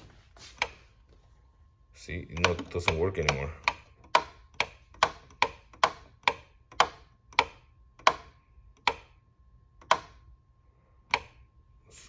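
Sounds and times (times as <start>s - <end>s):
light switch clicking: 2.4s - 9.1s, 9.8s - 10.2s, 11.1s - 11.4s.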